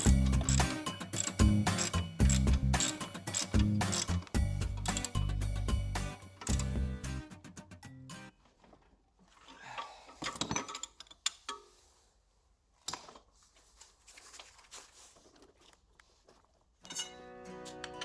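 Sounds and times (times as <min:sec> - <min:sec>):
tools and parts clinking: 0:00.0 - 0:05.7, 0:06.4 - 0:06.8, 0:08.6 - 0:11.7, 0:16.8 - 0:18.0
music: 0:00.0 - 0:08.4, 0:17.0 - 0:18.0.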